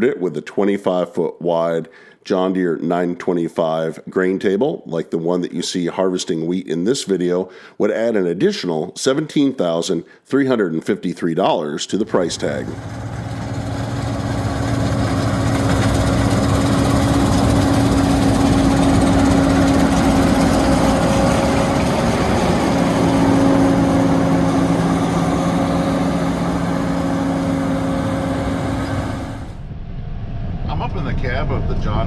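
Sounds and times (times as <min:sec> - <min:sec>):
combine harvester running: 0:12.1 - 0:29.6.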